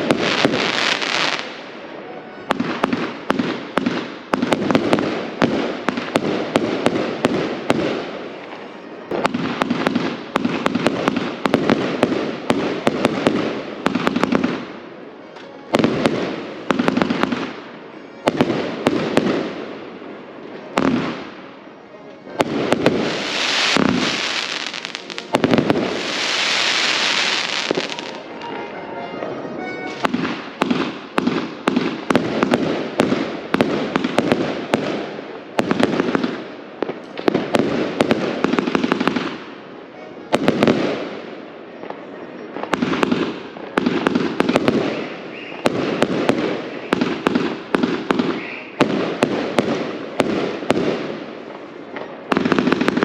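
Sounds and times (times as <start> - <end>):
firework hissing crackle: 0.0 - 1.9, 22.4 - 28.5
firework bangs: 0.0 - 15.1, 15.7 - 21.6, 22.3 - 28.6, 29.8 - 39.6, 40.2 - 53.0.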